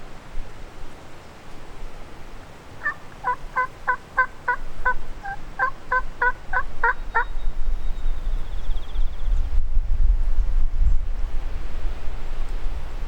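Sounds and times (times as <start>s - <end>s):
turkey yelps: 2.8s - 7.3s.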